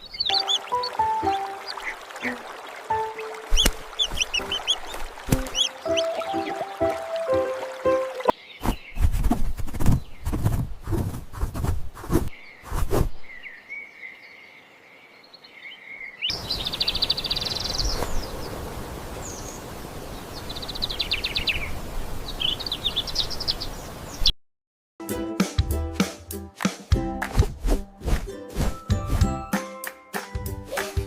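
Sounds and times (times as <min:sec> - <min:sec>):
songbird trilling: 0:00.0 - 0:02.4, 0:03.0 - 0:07.2
outdoor background hiss: 0:12.3 - 0:24.3.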